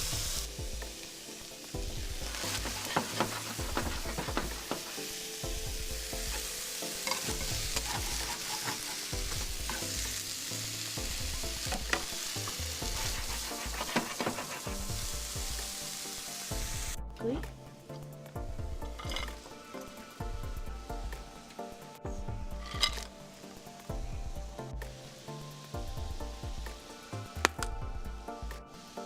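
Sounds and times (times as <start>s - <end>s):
vegetables sizzling in a frying pan: 0.0s - 17.8s, 18.4s - 29.0s
utensil scraping a pan: 2.1s - 5.4s, 6.2s - 10.2s, 11.5s - 15.4s, 18.9s - 19.4s, 22.6s - 23.1s.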